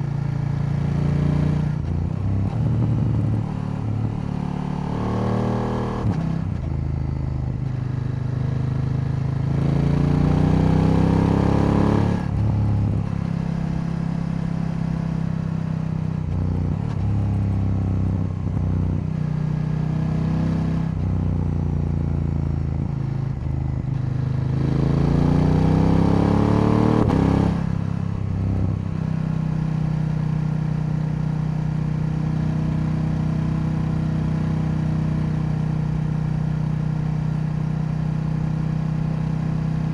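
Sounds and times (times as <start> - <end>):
motorcycle engine revving on road: 0.0 - 39.9.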